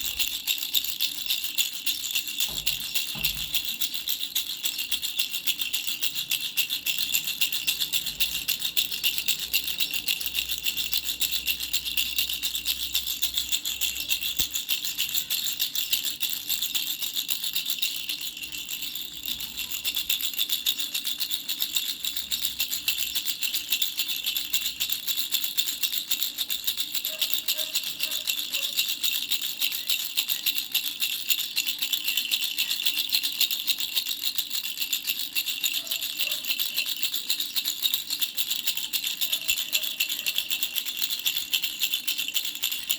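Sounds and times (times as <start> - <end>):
baby rattle bells jingling: 0.0 - 42.9.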